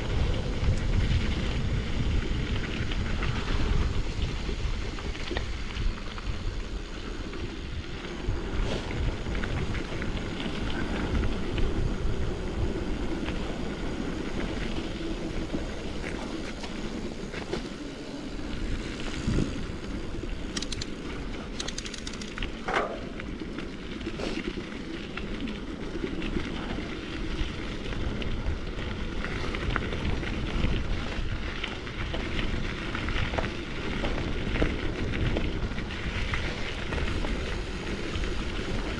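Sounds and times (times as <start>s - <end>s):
bike rattles and clicks: 0.0s - 38.9s
bike tyres rumbling on dirt: 0.0s - 38.9s
wind on microphone: 18.3s - 23.4s.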